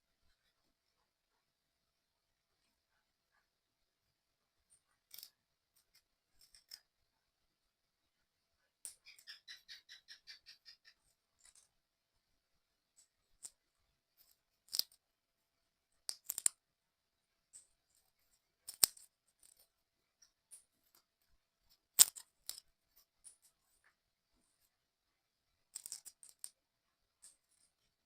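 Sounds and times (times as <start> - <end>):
puzzle parts clicking and tapping: 16.1 - 16.6, 18.6 - 19.6, 21.9 - 22.7, 25.7 - 26.6.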